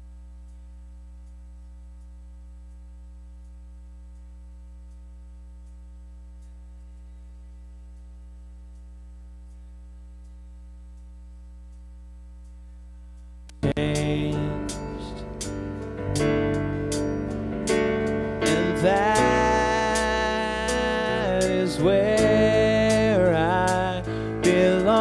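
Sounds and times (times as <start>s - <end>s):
electrical mains hum: 0.0s - 25.0s
faint regular ticking: 0.0s - 25.0s
guitar music: 13.6s - 25.0s.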